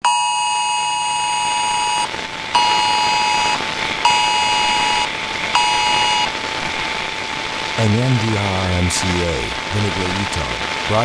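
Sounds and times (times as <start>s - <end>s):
two-pitch emergency alert tone: 0.0s - 6.3s.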